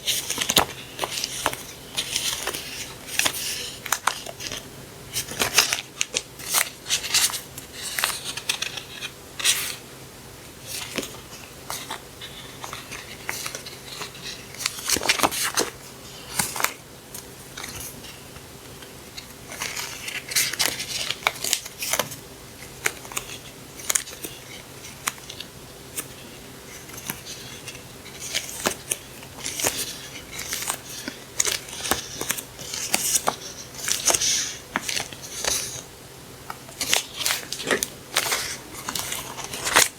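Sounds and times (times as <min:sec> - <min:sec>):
paper crinkling and rustling: 0:00.0 - 0:09.8, 0:10.5 - 0:39.9
faint steady hum: 0:00.0 - 0:39.9.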